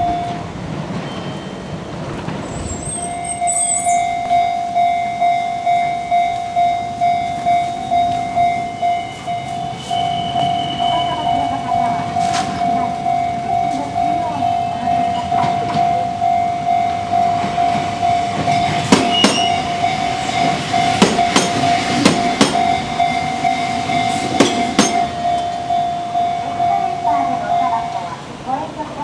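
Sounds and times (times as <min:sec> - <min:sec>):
train wheels clicking over rail joints: 0:00.0 - 0:04.4, 0:09.1 - 0:25.7
level-crossing warning bell: 0:00.0 - 0:29.0.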